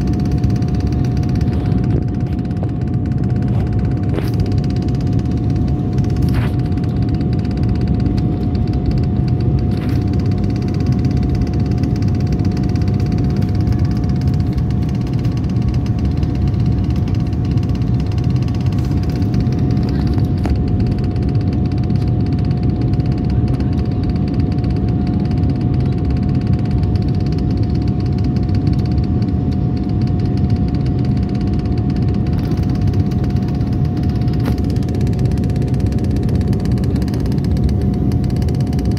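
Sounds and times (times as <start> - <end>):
aircraft cabin engine roar: 0.0 - 38.9
constant whine: 0.0 - 38.9.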